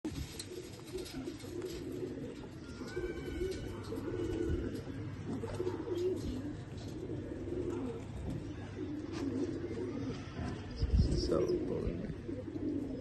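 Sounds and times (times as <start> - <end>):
pigeons cooing: 0.1 - 13.0.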